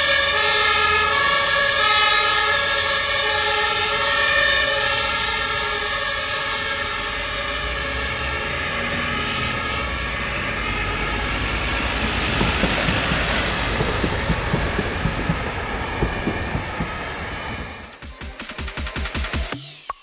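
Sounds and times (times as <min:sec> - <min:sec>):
fire engine air horns: 0:00.0 - 0:18.0
fire truck driving past: 0:00.0 - 0:18.2
low thumps: 0:10.9 - 0:18.0.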